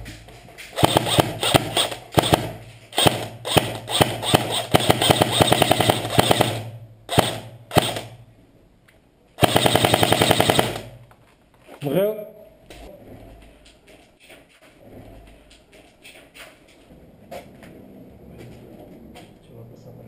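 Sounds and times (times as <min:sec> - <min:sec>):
airsoft guns firing: 0:00.7 - 0:08.2, 0:09.4 - 0:11.1.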